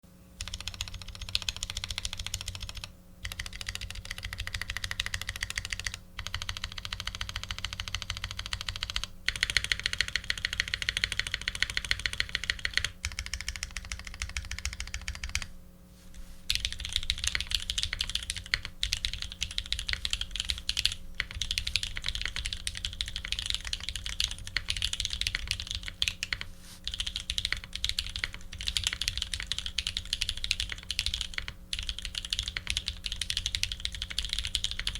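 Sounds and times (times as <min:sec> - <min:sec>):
mechanical keyboard typing: 0:00.4 - 0:15.5, 0:16.5 - 0:34.9.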